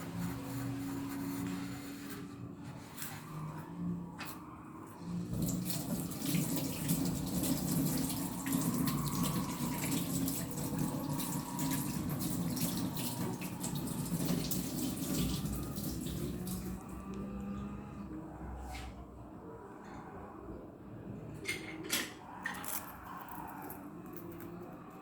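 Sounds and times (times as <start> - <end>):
coffee machine pump hum: 5.2 - 17.7
liquid spurting into cup: 5.3 - 17.0.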